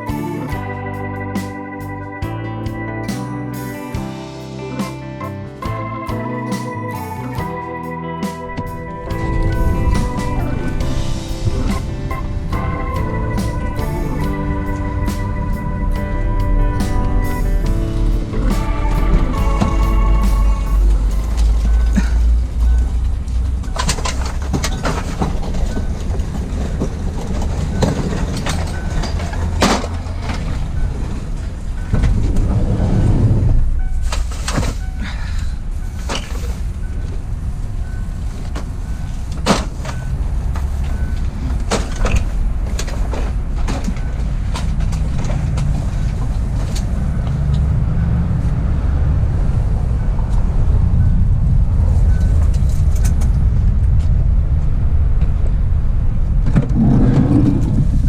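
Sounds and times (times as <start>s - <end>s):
heavy machinery rumbling: 0.0s - 58.0s
faint reversing beeper: 5.6s - 24.2s, 25.5s - 42.0s, 46.9s - 52.9s.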